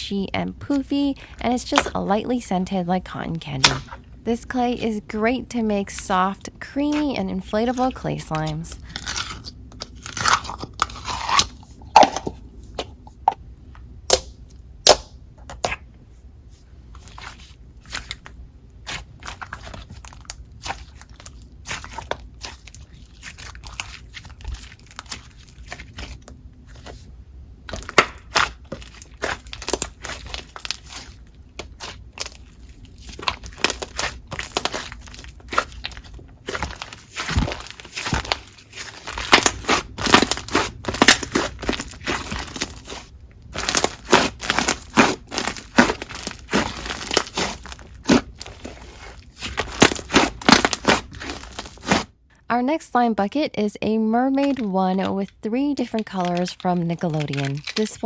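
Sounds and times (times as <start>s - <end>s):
hands squishing slime: 17.0s - 27.0s, 27.7s - 52.1s, 56.0s - 56.4s.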